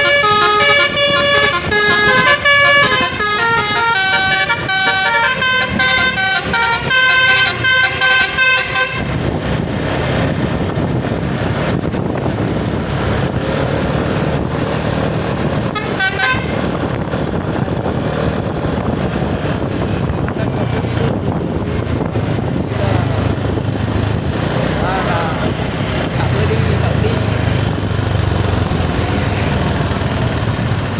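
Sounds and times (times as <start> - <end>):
musical air horn tune: 0.0 - 9.2, 15.7 - 16.6
heavy vehicle passing roar: 0.0 - 30.9.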